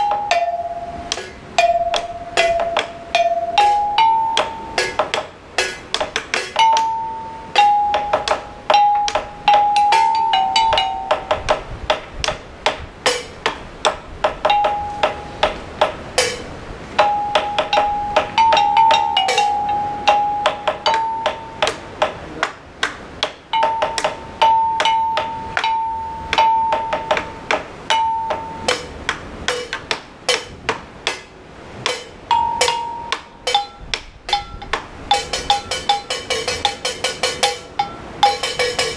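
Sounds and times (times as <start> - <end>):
bell-like melody: 0.0 - 5.8, 6.4 - 11.5, 14.4 - 21.9, 23.5 - 29.0, 31.9 - 38.9
sharp percussive clicks: 1.1 - 7.0, 7.6 - 38.9.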